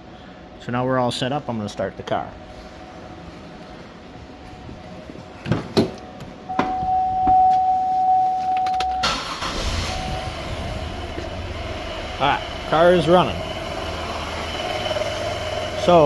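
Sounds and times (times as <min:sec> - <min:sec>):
ignition clicks: 0:06.6 - 0:11.4
car engine cranking: 0:08.6 - 0:16.0
car engine idling with misfire: 0:09.0 - 0:16.0.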